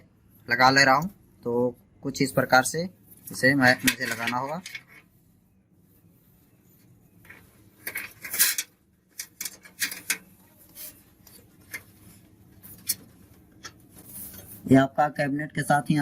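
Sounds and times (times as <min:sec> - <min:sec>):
metal parts clicking and clattering: 0:03.7 - 0:05.0, 0:07.8 - 0:10.3.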